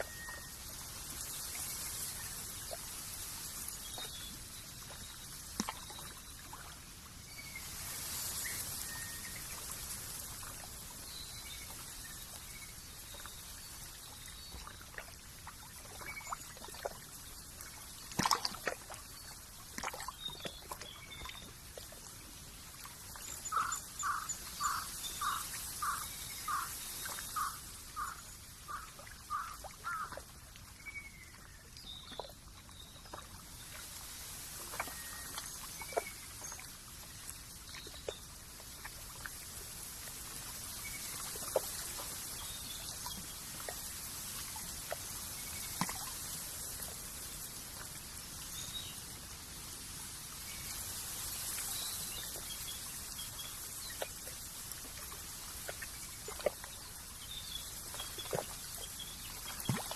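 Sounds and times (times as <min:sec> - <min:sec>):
water trickling and dripping: 0:00.0 - 0:59.9.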